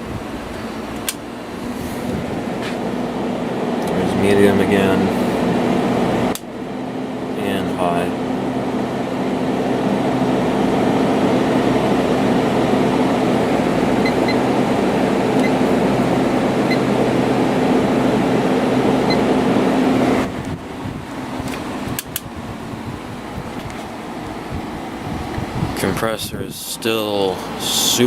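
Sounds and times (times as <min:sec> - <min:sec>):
air conditioner fan rushing air: 0:00.0 - 0:28.0
low compressor hum: 0:00.0 - 0:28.0.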